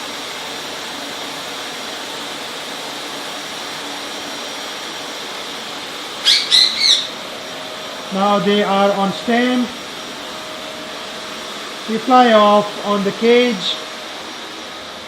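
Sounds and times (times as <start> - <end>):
vacuum cleaner running: 0.0 - 15.0
parrot squawking: 6.2 - 7.2.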